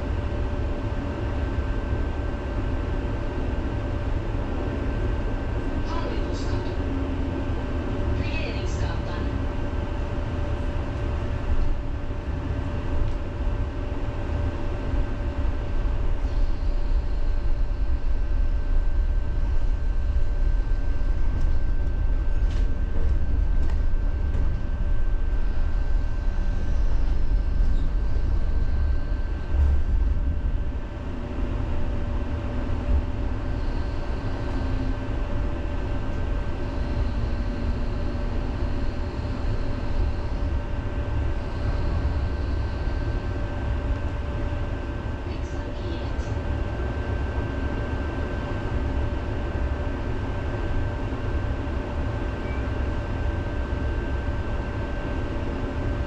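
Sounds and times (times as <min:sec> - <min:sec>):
tram rumbling on tracks: 0:00.0 - 0:50.6
tram whine: 0:00.0 - 0:56.0.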